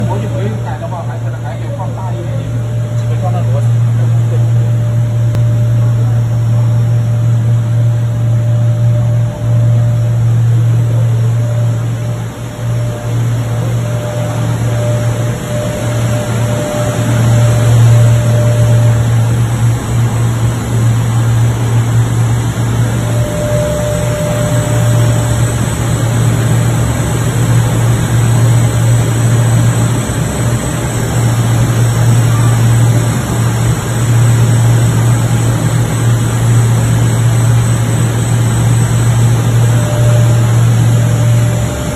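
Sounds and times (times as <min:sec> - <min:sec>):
faint higher tone: 0:00.0 - 0:26.9, 0:31.2 - 0:33.2, 0:38.6 - 0:41.9
extrusion machine humming: 0:00.0 - 0:41.9.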